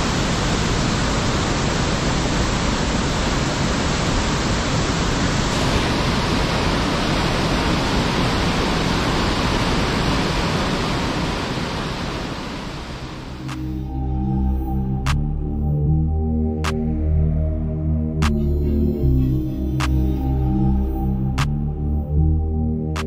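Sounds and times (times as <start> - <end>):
waterfall rushing: 0.0 - 13.6.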